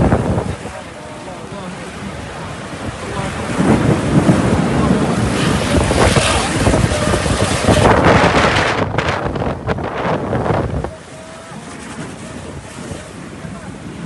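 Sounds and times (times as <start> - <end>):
storm wind gusting on microphone: 0.0 - 14.0.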